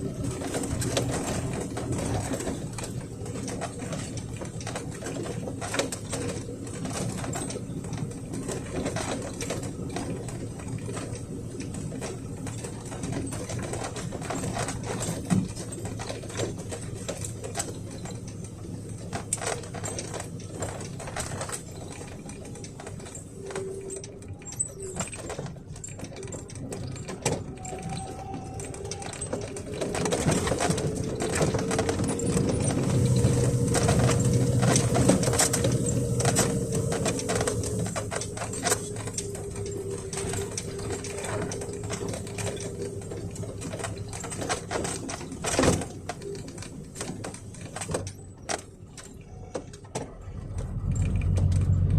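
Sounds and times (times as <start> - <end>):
engine low drone: 0.0 - 51.9
small clicks and rattles: 0.0 - 51.9
truck cab creaking and squeaking: 0.0 - 51.9.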